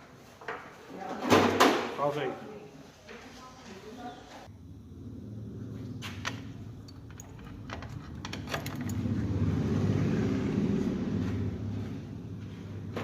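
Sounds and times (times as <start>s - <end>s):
low rumble: 4.5s - 13.0s.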